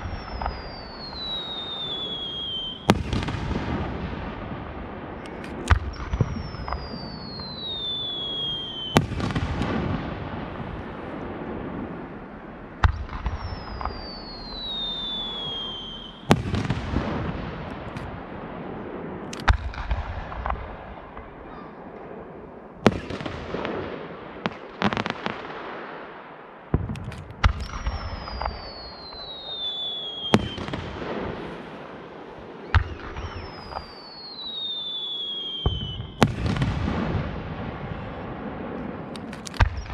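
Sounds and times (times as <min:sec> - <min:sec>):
descending firework whistle: 0:00.0 - 0:04.1, 0:05.1 - 0:10.2, 0:12.8 - 0:17.9, 0:27.5 - 0:37.4.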